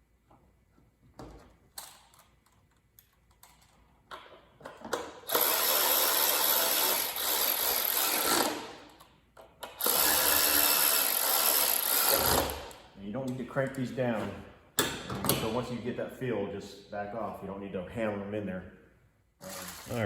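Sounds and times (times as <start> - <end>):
cordless power tool running: 5.3 - 8.6, 9.8 - 12.8.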